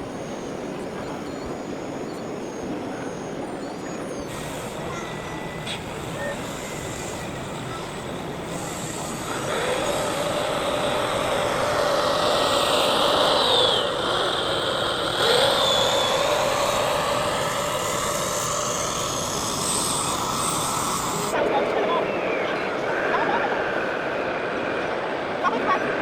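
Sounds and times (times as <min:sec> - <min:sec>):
electric motor whine: 0:04.3 - 0:21.4.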